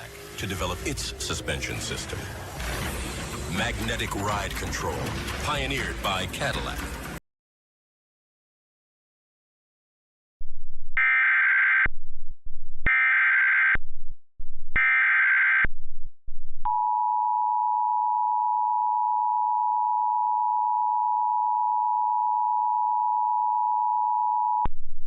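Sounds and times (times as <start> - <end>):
digital data bursts: 0.0 - 7.1.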